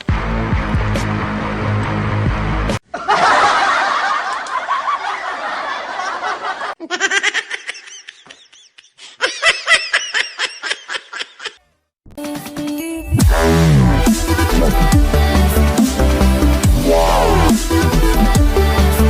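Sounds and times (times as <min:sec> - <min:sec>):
bursts of laughter: 0:02.9 - 0:11.6.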